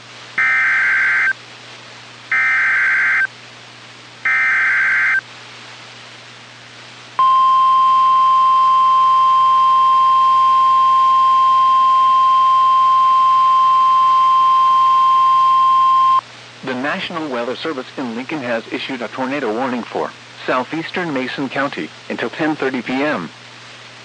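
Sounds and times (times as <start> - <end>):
steady alarm tone: 0.4 - 1.4, 2.3 - 3.3, 4.2 - 5.2
buzzy digital data bursts: 4.3 - 5.2.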